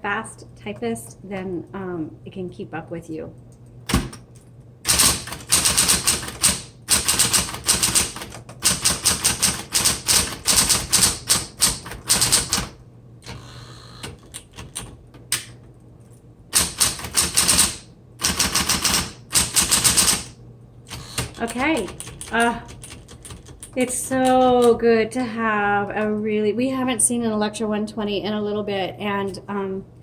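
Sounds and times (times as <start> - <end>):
electric typewriter typing: 3.9 - 15.6, 16.5 - 24.8.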